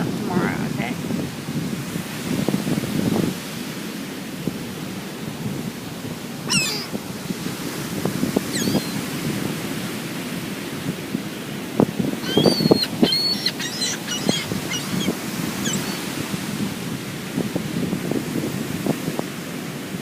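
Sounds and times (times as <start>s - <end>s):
surf: 0.0s - 20.0s
wind on microphone: 0.0s - 20.0s
seagulls calling: 6.4s - 7.0s, 8.4s - 9.1s, 12.1s - 16.4s.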